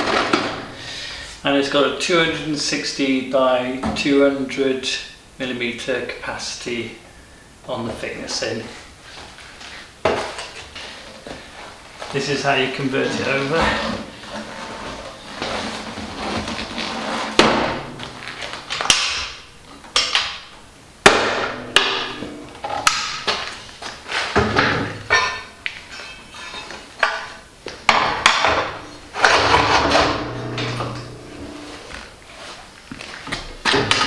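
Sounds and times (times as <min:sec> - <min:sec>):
machine parts clunking and knocking: 0:00.0 - 0:00.8, 0:27.9 - 0:31.8.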